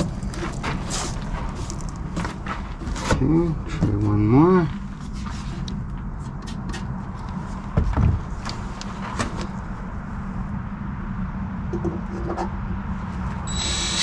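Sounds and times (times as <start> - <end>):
steady low hum: 0.0 - 14.0
parts and drill clicking: 13.5 - 14.0.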